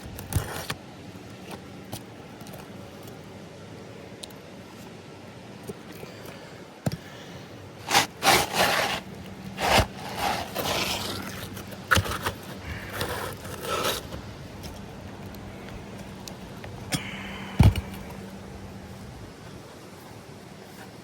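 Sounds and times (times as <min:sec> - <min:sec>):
scraping on roof shingles: 0:07.8 - 0:15.0.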